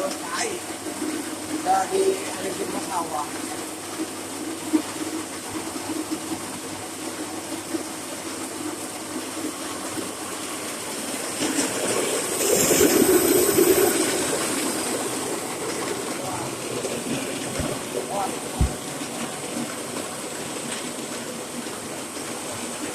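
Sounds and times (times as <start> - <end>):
machine running: 10.8 - 22.9.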